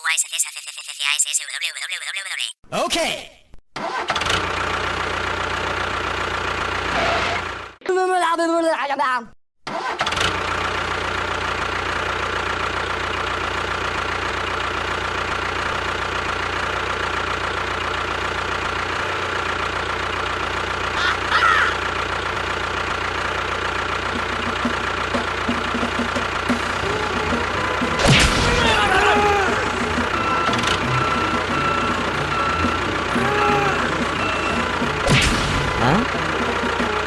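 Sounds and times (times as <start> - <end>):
engine running steadily: 10.5 - 37.0.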